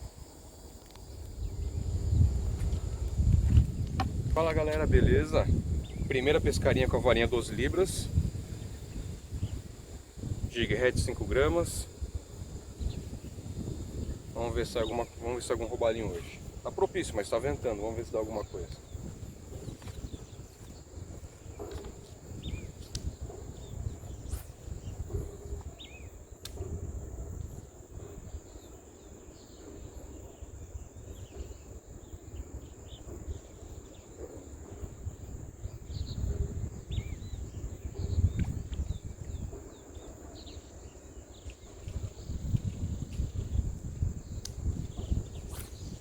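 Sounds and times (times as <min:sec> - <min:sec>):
high-pitched insect drone: 0:00.0 - 0:26.2
wind buffeting microphone: 0:00.0 - 0:46.0.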